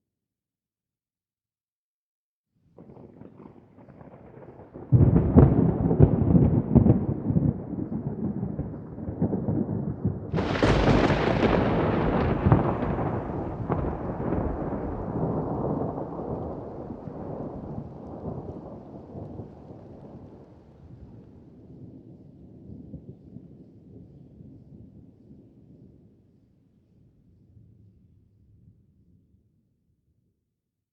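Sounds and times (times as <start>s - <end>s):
thunder crack: 2.8s - 20.4s
thunder rumbling: 2.8s - 25.0s.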